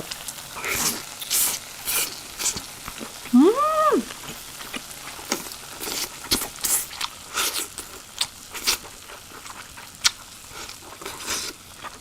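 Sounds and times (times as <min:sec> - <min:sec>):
crunchy chewing of food: 0:04.3 - 0:12.0.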